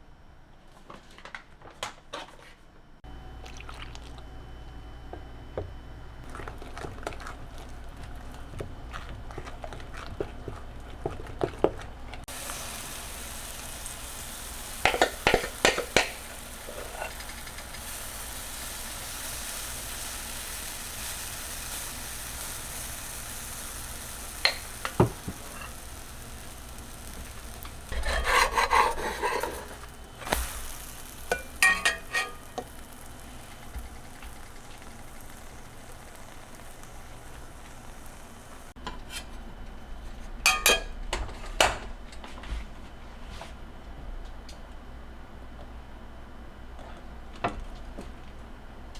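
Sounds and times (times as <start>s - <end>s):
food sizzling in a frying pan: 12.3s - 38.8s
utensils and dishes clinking: 24.2s - 33.2s, 40.5s - 41.2s.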